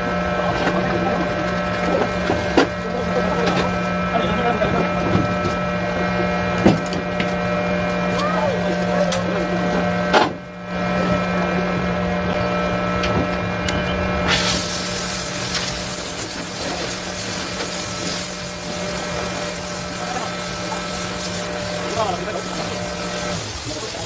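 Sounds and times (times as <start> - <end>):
machine hum: 0.0 - 24.0
loud harsh hiss: 14.2 - 24.0.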